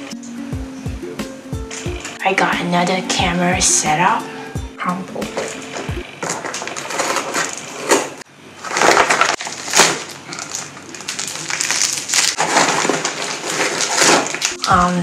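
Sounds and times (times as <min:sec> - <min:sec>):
plastic packaging crinkling: 0:05.3 - 0:15.0.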